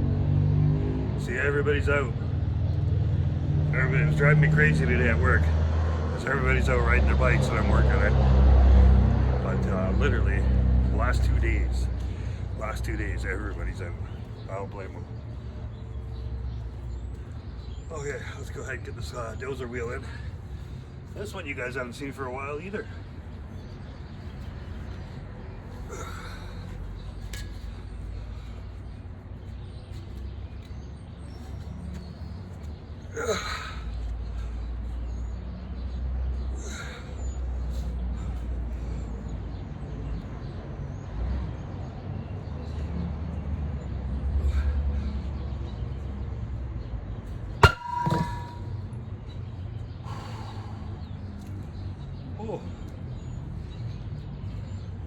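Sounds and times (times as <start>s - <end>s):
low outdoor rumble: 47.3s - 49.3s
metallic clang: 47.6s - 48.9s.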